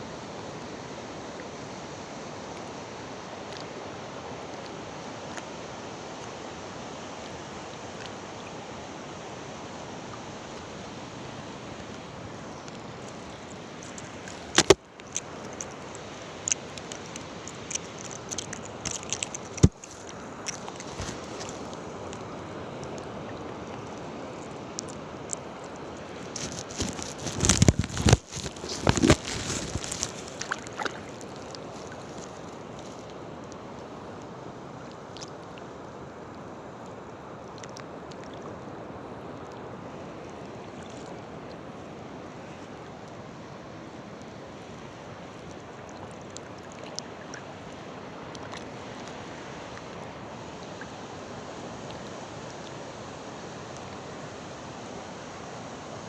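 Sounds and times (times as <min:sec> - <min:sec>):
sea water washing: 0:00.1 - 0:56.0
wind on microphone: 0:26.2 - 0:32.5
knocks and crackles on microphone: 0:26.4 - 0:30.5.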